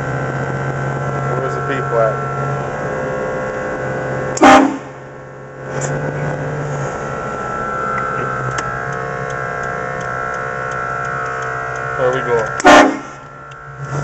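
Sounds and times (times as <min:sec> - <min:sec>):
vehicle engine drone: 0:00.0 - 0:14.0
train horn blast: 0:04.4 - 0:05.0, 0:12.6 - 0:13.3.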